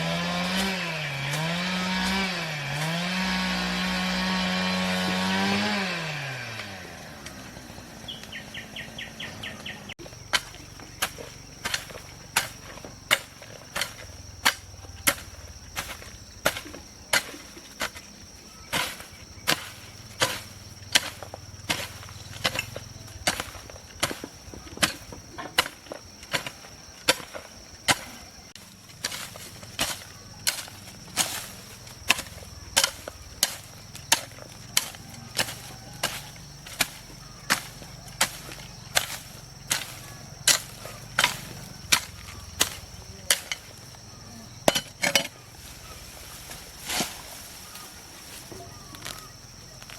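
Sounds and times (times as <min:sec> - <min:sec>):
chainsaw engine winding down: 0:00.0 - 0:08.8
hand tool chopping: 0:00.0 - 0:47.8
high insect drone: 0:00.0 - 0:49.9.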